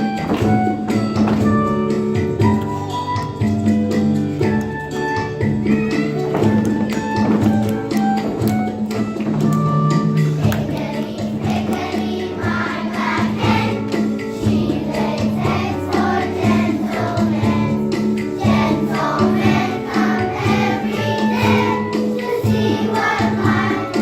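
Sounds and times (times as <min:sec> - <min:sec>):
instrumental backing with beat: 0:00.0 - 0:24.0
group of voices singing: 0:10.6 - 0:24.0.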